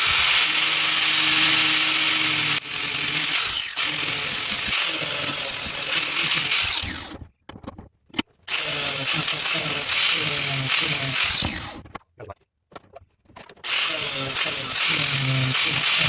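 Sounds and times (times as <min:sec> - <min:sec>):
grinder grinding steel: 0:00.0 - 0:07.2, 0:08.5 - 0:11.8, 0:13.7 - 0:16.0.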